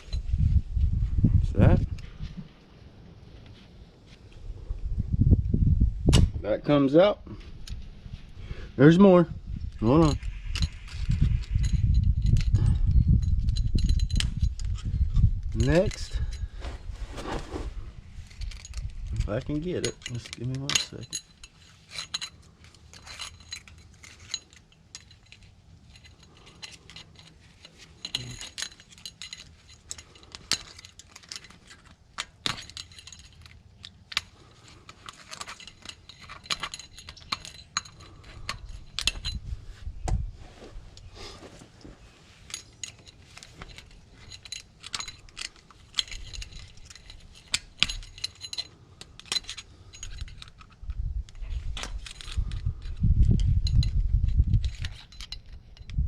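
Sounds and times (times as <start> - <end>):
metal parts clinking: 9.7 - 16.8, 17.9 - 39.6, 42.2 - 56.0.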